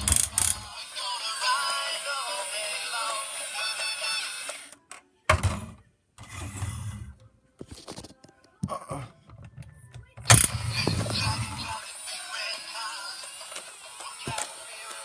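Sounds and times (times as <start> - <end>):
toys knocking and rattling: 9.2 - 11.8.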